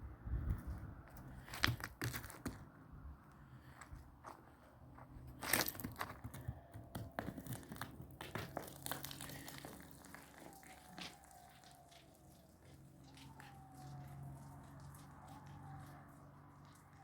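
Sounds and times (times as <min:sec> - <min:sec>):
crackling and rustling: 0:03.6 - 0:17.0.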